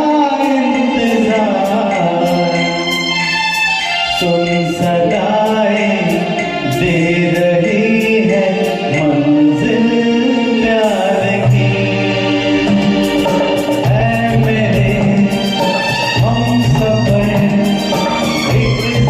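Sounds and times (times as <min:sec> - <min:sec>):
backing track with light percussion: 0:00.0 - 0:19.0
person singing: 0:00.0 - 0:19.0.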